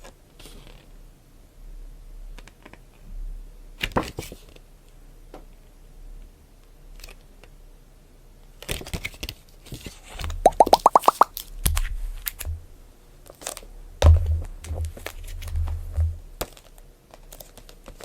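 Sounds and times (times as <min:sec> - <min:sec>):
short pops rising in pitch: 0:10.5 - 0:11.3.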